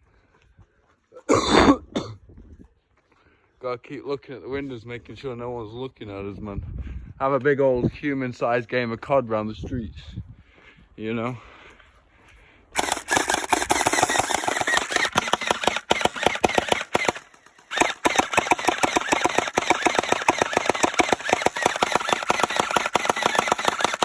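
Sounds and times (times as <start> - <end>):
gel blaster rapid firing: 12.8 - 24.0.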